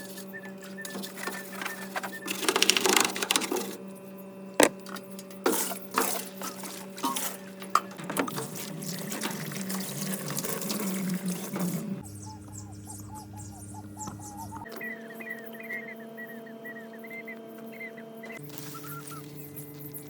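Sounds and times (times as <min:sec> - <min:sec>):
steady low hum: 0:00.0 - 0:20.0
water splashing: 0:08.0 - 0:12.0.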